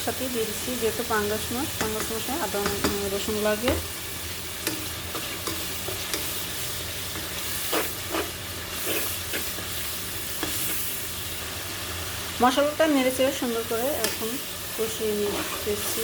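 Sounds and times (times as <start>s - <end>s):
spice paste sizzling in oil: 0.0s - 16.0s
spatula scraping pan: 4.6s - 11.0s, 15.1s - 16.0s.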